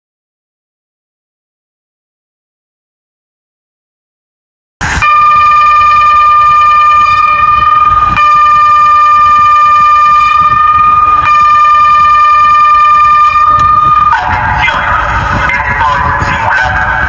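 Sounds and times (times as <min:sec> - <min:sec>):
warning siren steady pitch: 0:04.8 - 0:17.0.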